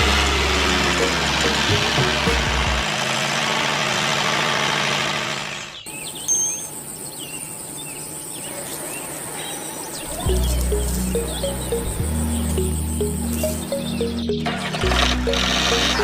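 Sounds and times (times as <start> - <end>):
music: 0.0 - 2.8, 10.3 - 16.0
birds chirping: 5.6 - 16.0.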